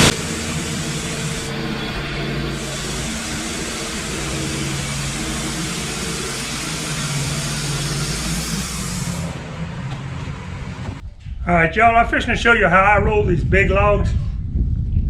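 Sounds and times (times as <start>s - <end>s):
band saw blade cutting log: 0.0s - 11.0s
sawmill engine humming: 0.0s - 11.0s.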